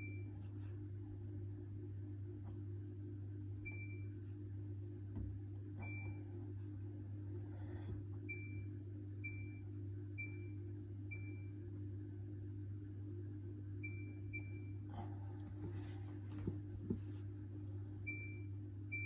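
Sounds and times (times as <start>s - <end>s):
steady low hum: 0.0s - 19.0s
washing machine short high beeps: 5.8s - 6.3s, 8.3s - 11.6s, 13.8s - 14.9s, 18.0s - 19.0s.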